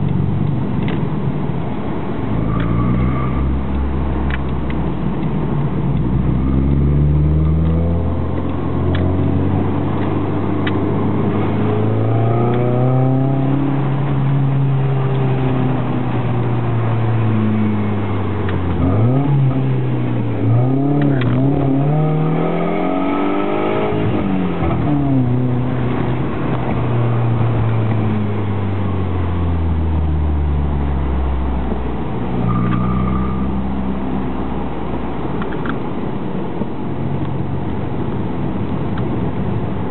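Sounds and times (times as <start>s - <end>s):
car engine revving: 5.6s - 34.6s.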